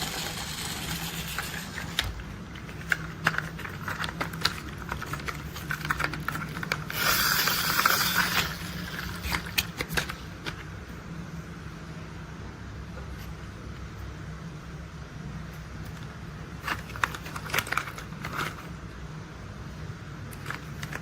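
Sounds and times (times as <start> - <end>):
plastic toy rolling scrape: 0.0 - 2.2, 6.3 - 9.6
plastic toys clicking and knocking: 0.0 - 10.2.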